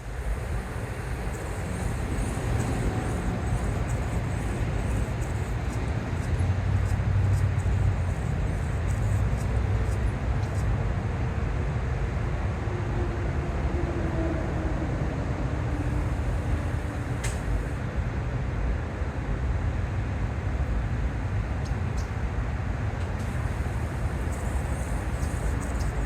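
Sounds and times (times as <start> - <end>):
vehicle engine rumbling: 0.2 - 10.6.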